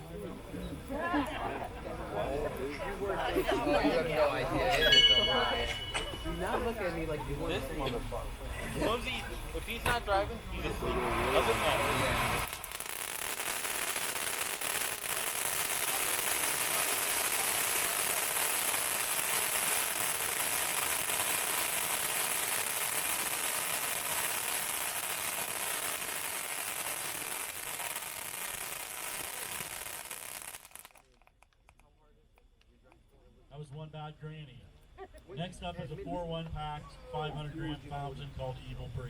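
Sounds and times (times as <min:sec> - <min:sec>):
firework fountain crackling hiss: 0:01.3 - 0:31.8.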